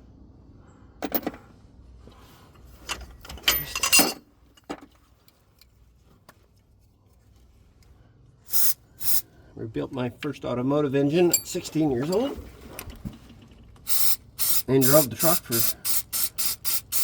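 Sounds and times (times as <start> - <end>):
metal hand tools clinking: 3.4 - 4.2, 11.2 - 12.3.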